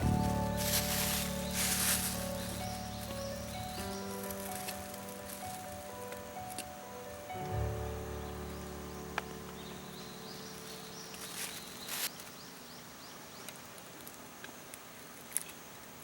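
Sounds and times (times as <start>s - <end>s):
short rustle: 0.0s - 6.2s, 10.7s - 12.2s
held music chord: 0.0s - 12.1s
faint outdoor ambience: 0.0s - 16.0s.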